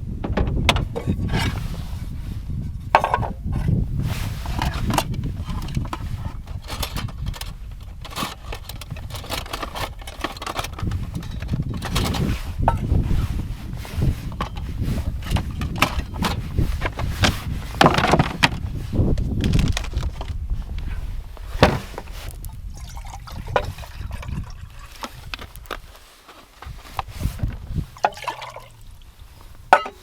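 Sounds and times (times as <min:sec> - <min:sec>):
knocks and clatters: 0:00.2 - 0:01.6, 0:02.9 - 0:03.7, 0:04.5 - 0:13.0, 0:14.3 - 0:20.4, 0:21.5 - 0:22.3, 0:29.7 - 0:30.0
water splashing and trickling: 0:22.3 - 0:25.3, 0:27.7 - 0:30.0.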